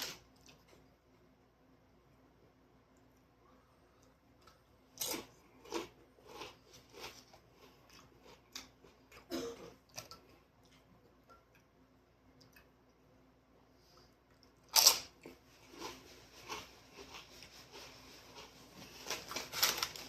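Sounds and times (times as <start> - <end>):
person chewing food: 3.9 - 11.8, 14.0 - 20.0.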